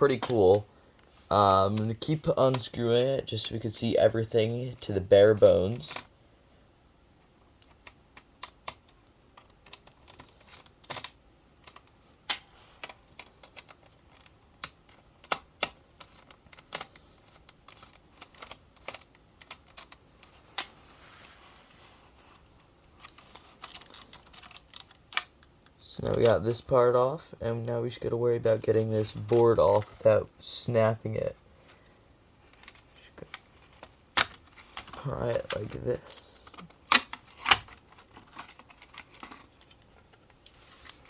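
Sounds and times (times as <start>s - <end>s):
plastic casing being handled: 7.6s - 21.3s, 22.2s - 26.4s, 31.6s - 41.0s.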